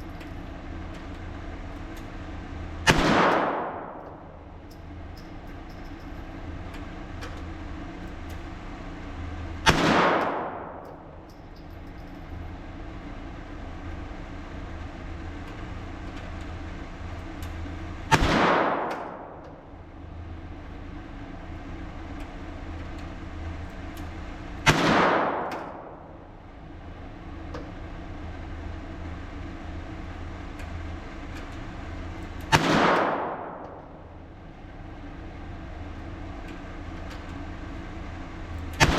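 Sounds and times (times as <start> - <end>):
steady low hum: 0.0 - 38.9
rifle shots with echo: 2.9 - 4.6, 9.7 - 11.2, 18.1 - 19.7, 24.6 - 26.3, 32.5 - 34.2.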